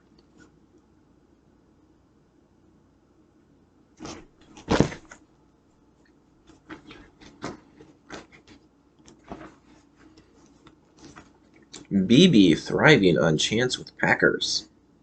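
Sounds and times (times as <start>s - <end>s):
paper taps and rustles: 4.0s - 5.2s, 6.4s - 11.6s.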